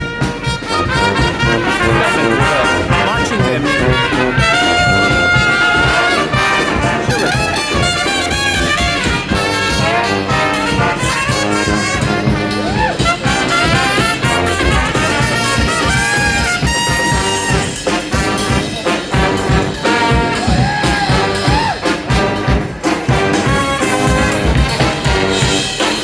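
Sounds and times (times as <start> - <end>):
drums keeping a steady beat: 0.0 - 26.0
trumpets and trombones: 0.0 - 26.0.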